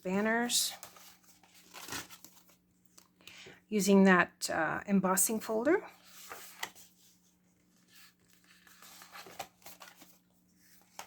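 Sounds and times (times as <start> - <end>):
cards sliding and rustling: 0.7 - 3.1, 6.0 - 11.0.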